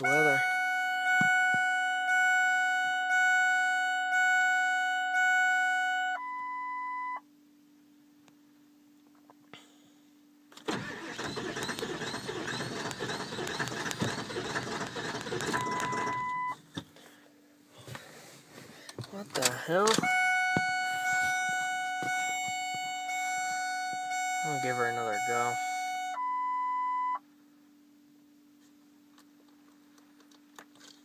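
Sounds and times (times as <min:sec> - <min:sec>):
short beep: 0:00.0 - 0:07.2, 0:15.5 - 0:16.6, 0:19.9 - 0:27.2
truck warning chime dinging: 0:00.0 - 0:07.2, 0:11.0 - 0:16.6, 0:19.4 - 0:27.2
starter cranking diesel engine: 0:10.6 - 0:16.4.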